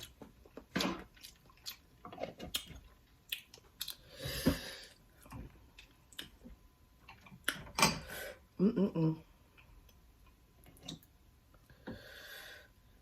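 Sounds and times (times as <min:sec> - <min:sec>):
person chewing: 0:00.0 - 0:07.7.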